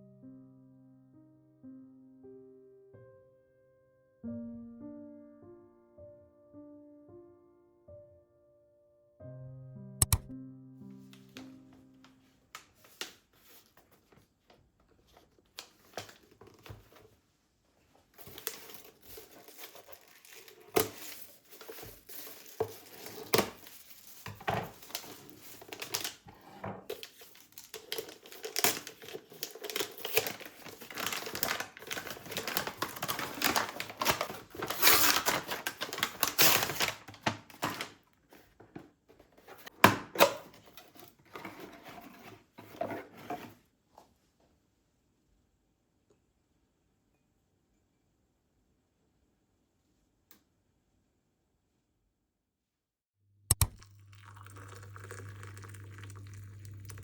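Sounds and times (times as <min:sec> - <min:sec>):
small clicks: 0:10.0 - 0:10.3
crinkling and rustling: 0:11.2 - 0:44.2.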